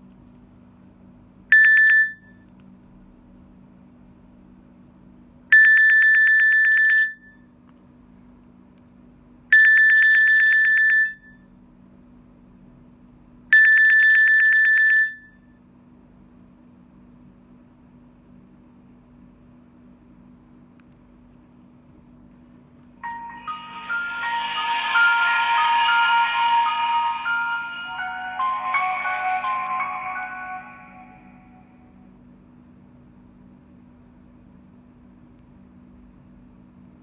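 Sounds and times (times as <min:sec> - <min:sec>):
trilling electronic phone ring: 0:01.6 - 0:02.2, 0:23.0 - 0:32.0.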